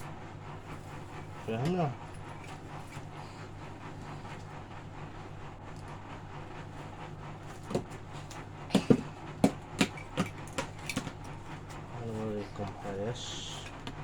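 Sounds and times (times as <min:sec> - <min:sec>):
steady low hum: 0:00.0 - 0:14.0
hard parts clicking and knocking: 0:07.7 - 0:11.4.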